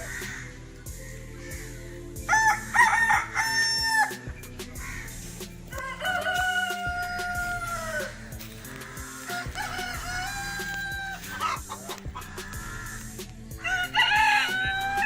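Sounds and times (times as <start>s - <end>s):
rooster crowing: 2.3s - 4.2s, 5.7s - 8.2s, 9.1s - 15.0s.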